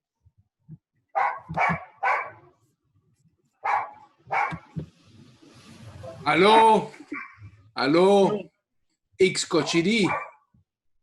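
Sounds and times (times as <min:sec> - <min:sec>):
dog barking: 0:01.1 - 0:02.5, 0:03.6 - 0:04.7, 0:07.1 - 0:07.5, 0:09.5 - 0:10.5.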